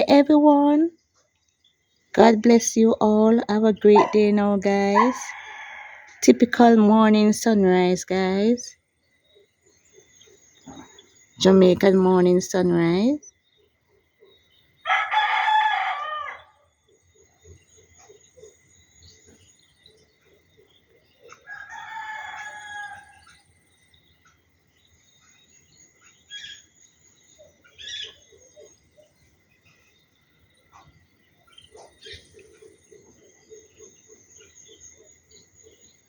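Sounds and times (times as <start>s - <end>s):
bird chirps: 0.0s - 36.0s
rooster crowing: 5.0s - 6.2s, 14.8s - 16.6s, 21.4s - 23.4s.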